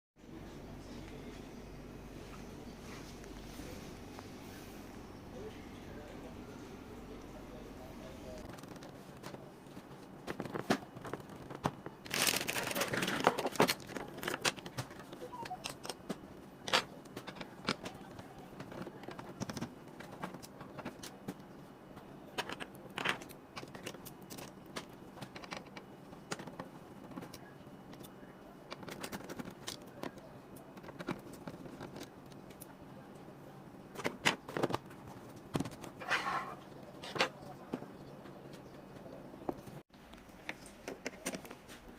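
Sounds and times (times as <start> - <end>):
scraping and rustling: 8.2 - 21.4, 33.9 - 37.9.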